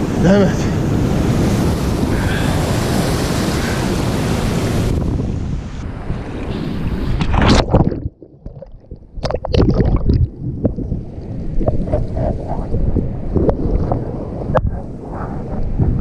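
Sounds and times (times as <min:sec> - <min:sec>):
wind buffeting microphone: 0:00.0 - 0:08.2, 0:08.9 - 0:16.0
sea water splashing: 0:05.9 - 0:15.9.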